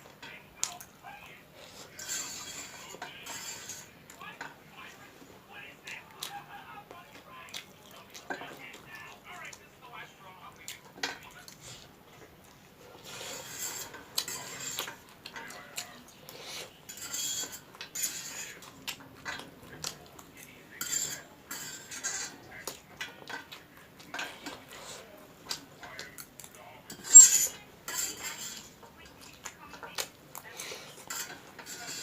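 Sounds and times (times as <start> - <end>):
utensil scraping against bowl: 1.5 - 4.6, 12.8 - 19.9, 20.7 - 23.5, 26.9 - 32.0
noodle slurping: 12.8 - 15.0.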